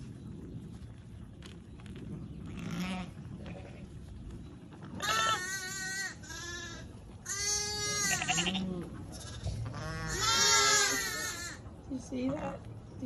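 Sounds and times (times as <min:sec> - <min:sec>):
sheep bleating: 0:05.0 - 0:11.6.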